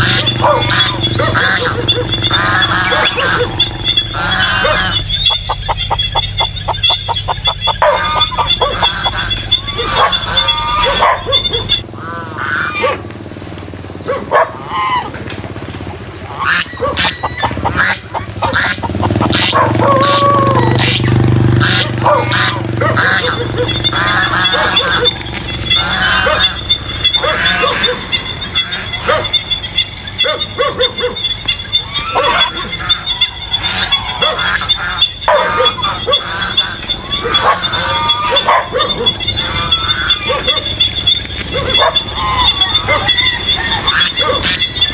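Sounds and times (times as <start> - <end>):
high insect-like tone: 0.0 - 11.8
chicken clucking: 0.0 - 15.1, 16.2 - 29.4, 30.0 - 44.9
geese honking: 0.0 - 44.9
high insect trill: 0.0 - 44.9.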